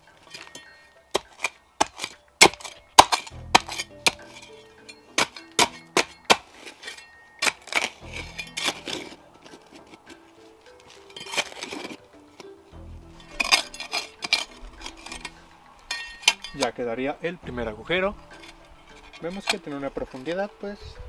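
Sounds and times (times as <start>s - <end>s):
metallic clink: 0.0s - 16.8s, 18.2s - 20.4s
shovel chopping into ground: 0.4s - 10.0s, 10.8s - 12.5s.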